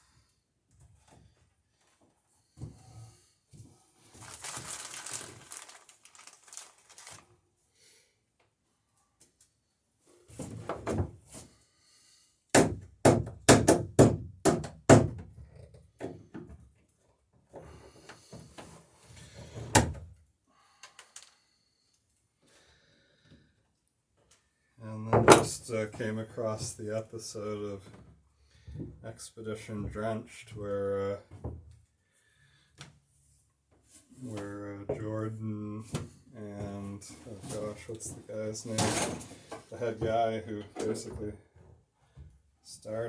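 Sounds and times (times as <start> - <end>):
rustling scraping handling noise: 4.0 - 7.3, 36.9 - 40.2
hammer striking wood: 12.6 - 15.2.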